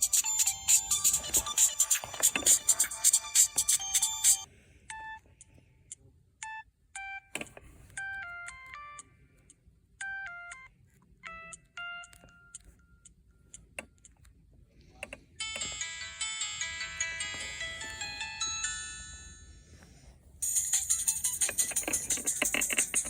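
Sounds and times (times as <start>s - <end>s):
electronic ringtone beeping: 0.0s - 5.2s, 10.0s - 13.1s, 15.4s - 19.7s, 20.4s - 23.0s
busy polyphonic ringtone: 0.0s - 5.6s, 7.9s - 13.7s, 15.4s - 23.0s.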